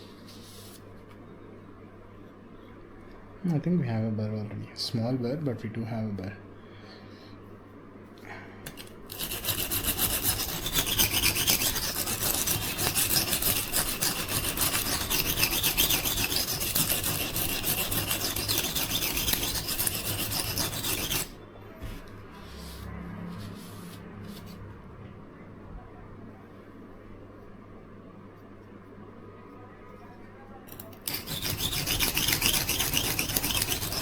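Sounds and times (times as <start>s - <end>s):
knife scraping on whetstone: 8.7s - 21.4s, 30.7s - 34.0s.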